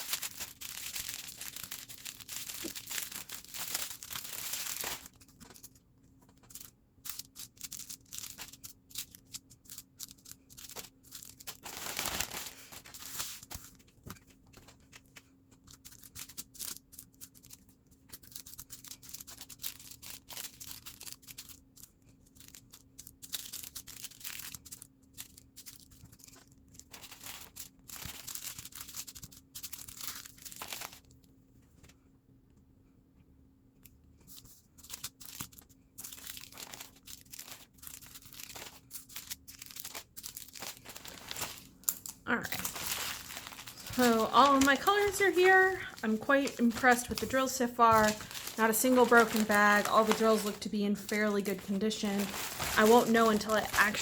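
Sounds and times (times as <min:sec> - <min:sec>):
plastic bags rustling: 0:00.0 - 0:05.7, 0:10.6 - 0:13.5, 0:36.0 - 0:54.0.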